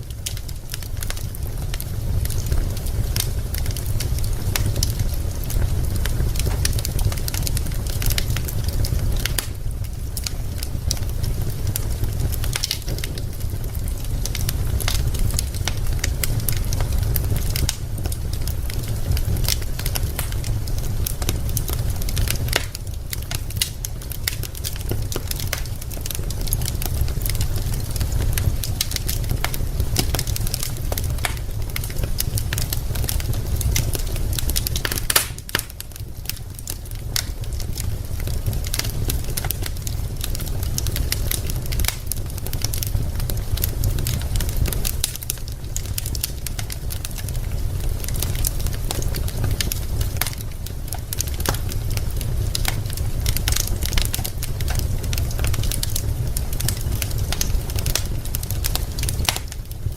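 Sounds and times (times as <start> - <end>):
low fire rumble: 0.0 - 59.9
wood fire crackling: 0.0 - 59.9
logs popping: 34.8 - 35.8.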